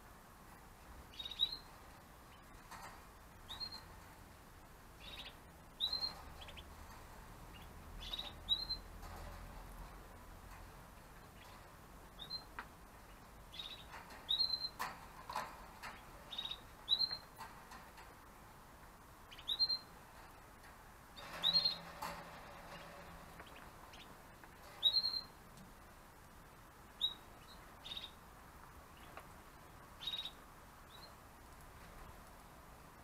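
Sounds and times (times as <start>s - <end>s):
faint clicks and knocks: 0.4s - 18.9s, 20.0s - 26.0s
canary chirp calls: 1.1s - 2.5s, 3.4s - 4.0s, 5.0s - 6.8s, 7.5s - 9.3s, 13.1s - 15.4s, 16.0s - 17.4s, 19.3s - 20.0s, 21.2s - 25.4s, 27.0s - 28.2s, 30.0s - 31.2s.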